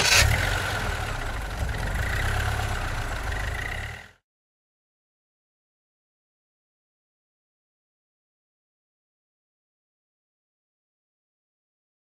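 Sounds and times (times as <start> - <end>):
car engine idling: 0.0 - 4.2.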